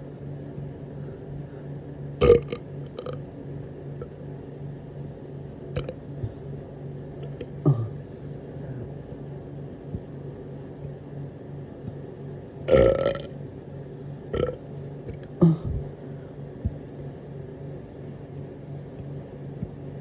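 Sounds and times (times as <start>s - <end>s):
person burping: 2.2s - 3.2s, 7.6s - 8.0s, 12.7s - 13.2s, 14.4s - 14.6s, 15.4s - 15.8s.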